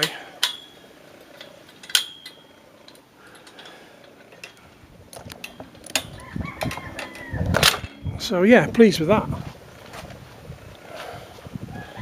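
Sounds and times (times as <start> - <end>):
metallic clicks and knocks: 1.4 - 8.0.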